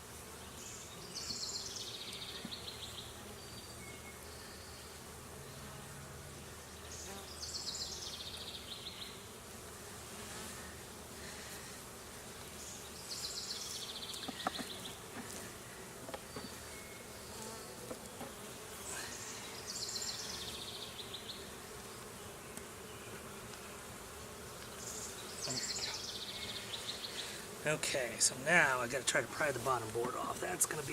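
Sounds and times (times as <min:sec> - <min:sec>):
honeybees buzzing: 0:00.0 - 0:30.9
light knocks: 0:14.2 - 0:15.3.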